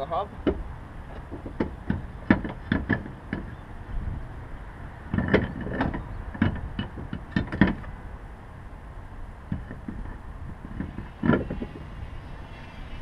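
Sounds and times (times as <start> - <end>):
wheel knocks and clinks: 5.1 - 7.9.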